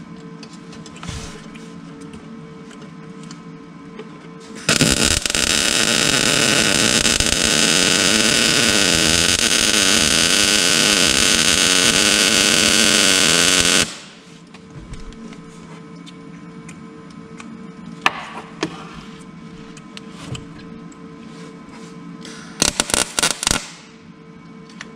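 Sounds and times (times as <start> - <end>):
steady hum: 0.0 - 24.9
welding hiss: 4.6 - 14.3, 22.6 - 23.9.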